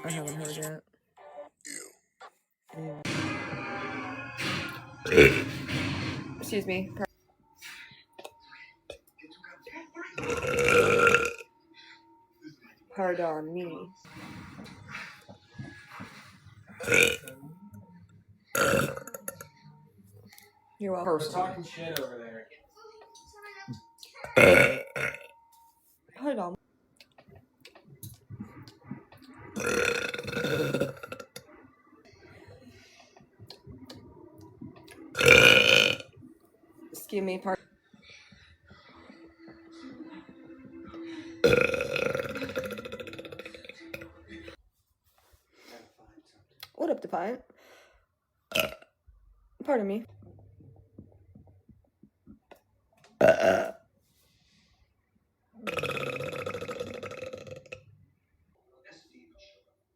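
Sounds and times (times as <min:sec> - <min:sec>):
woman burping loudly: 0:05.0 - 0:05.6, 0:10.2 - 0:11.5, 0:16.8 - 0:17.4, 0:18.5 - 0:19.5, 0:24.3 - 0:25.3, 0:29.6 - 0:31.4, 0:35.1 - 0:36.1, 0:41.4 - 0:44.1, 0:48.5 - 0:48.8, 0:53.2 - 0:53.8, 0:55.6 - 0:57.8.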